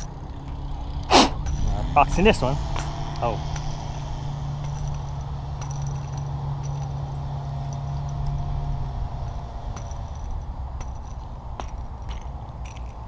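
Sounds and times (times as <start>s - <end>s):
drone motors buzzing: 0.2s - 10.4s.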